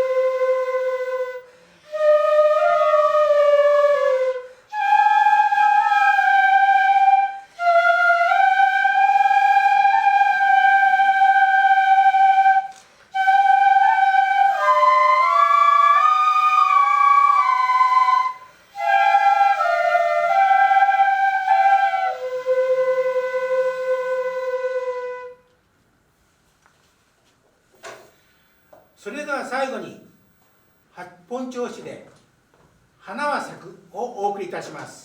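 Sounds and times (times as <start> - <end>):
bamboo flutes playing slow melody: 0.0 - 25.6.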